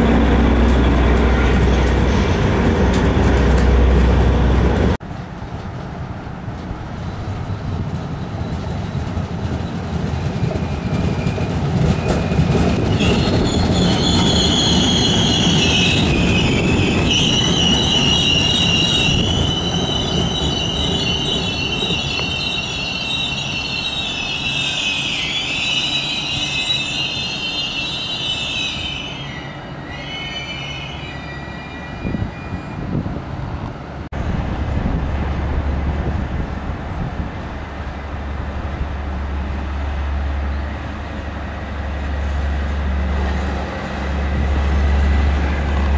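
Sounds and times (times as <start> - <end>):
rolling train rumble: 0.0 - 45.9
train wheels squealing: 8.1 - 33.0, 40.4 - 42.3.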